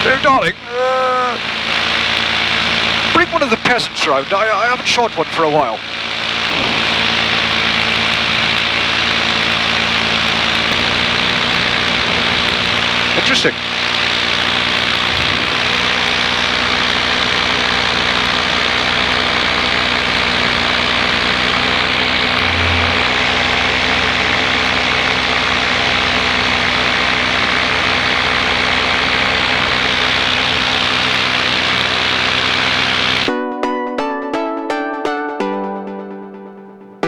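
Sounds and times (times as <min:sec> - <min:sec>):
paramotor engine droning: 0:00.0 - 0:33.3
rushing hiss: 0:05.7 - 0:24.9.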